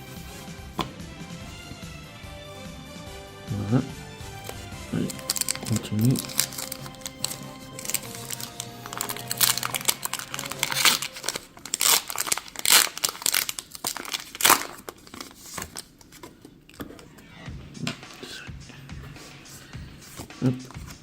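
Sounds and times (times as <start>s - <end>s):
foil wrapper rustling: 4.4s - 16.4s
foil wrapper tearing: 4.5s - 16.1s.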